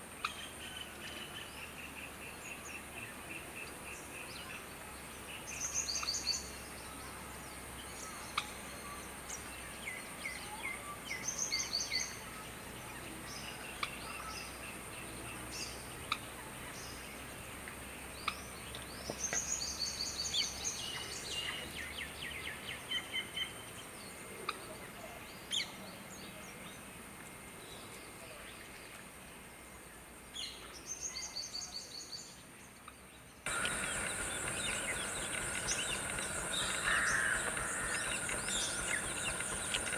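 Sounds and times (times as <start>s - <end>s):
birds chirping: 33.5s - 39.9s
high-pitched hiss: 33.5s - 39.9s.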